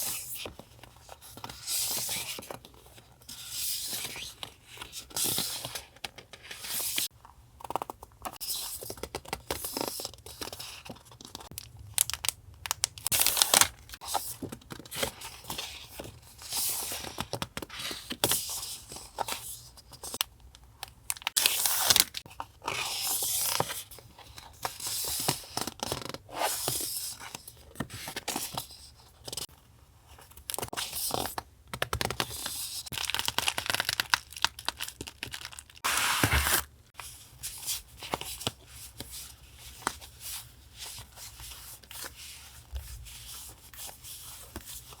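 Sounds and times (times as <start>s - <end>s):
paper tearing and rustling: 35.8s - 36.7s.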